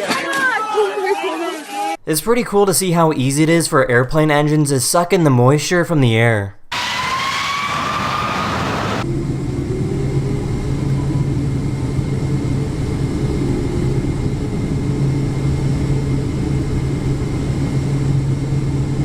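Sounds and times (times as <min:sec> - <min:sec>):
jet engine rushing whine: 0:06.7 - 0:19.0
steady low hum: 0:09.0 - 0:19.0.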